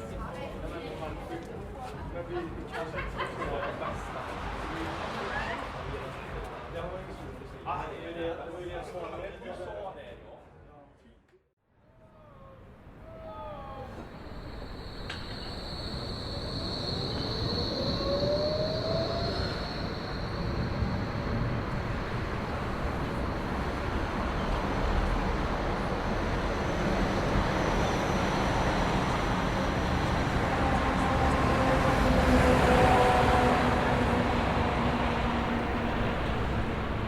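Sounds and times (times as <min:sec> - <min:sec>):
train rumbling on rails: 0:00.0 - 0:07.5, 0:12.7 - 0:37.0
rising whine: 0:13.5 - 0:37.0.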